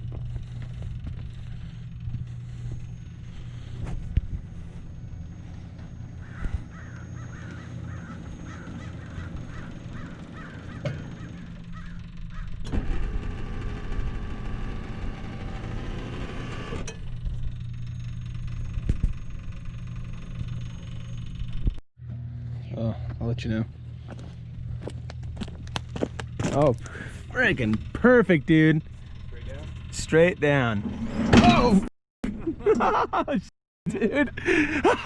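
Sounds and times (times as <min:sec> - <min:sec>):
buzzing of stacked tones: 0:00.0 - 0:21.8
low engine hum: 0:00.0 - 0:31.8
bird calling: 0:05.0 - 0:12.6.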